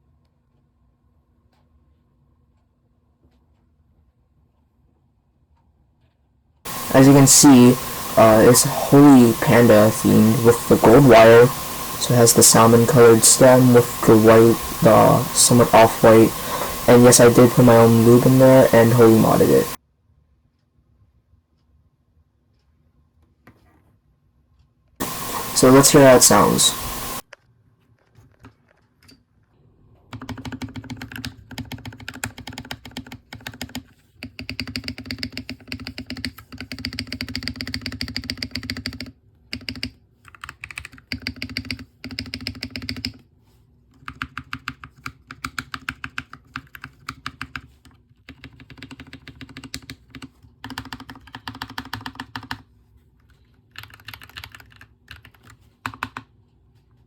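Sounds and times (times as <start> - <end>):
mechanical keyboard typing: 30.1 - 43.2, 44.0 - 52.7, 53.7 - 56.3.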